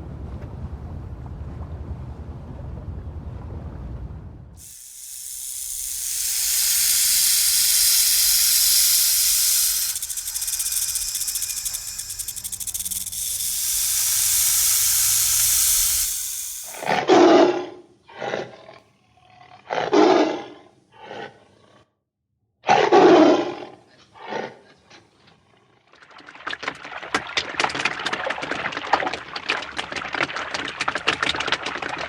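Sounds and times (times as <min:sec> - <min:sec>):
steady hiss: 0:04.6 - 0:16.9.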